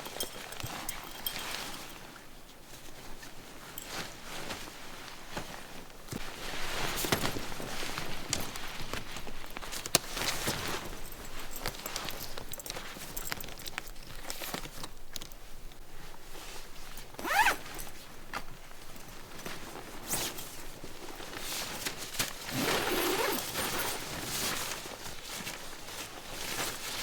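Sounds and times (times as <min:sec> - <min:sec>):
tent zipper being pulled: 0:17.2 - 0:17.8, 0:22.4 - 0:24.2.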